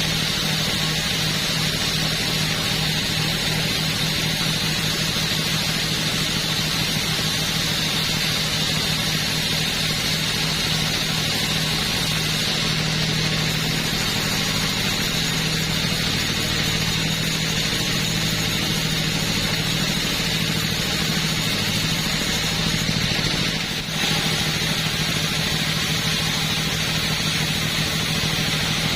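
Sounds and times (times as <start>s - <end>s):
chainsaw cutting log: 0.0s - 28.9s.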